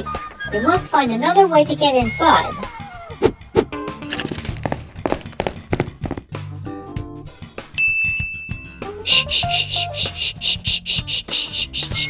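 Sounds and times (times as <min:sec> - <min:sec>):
held high tone: 0:09.1 - 0:12.0
quick hissing beat: 0:09.1 - 0:12.0.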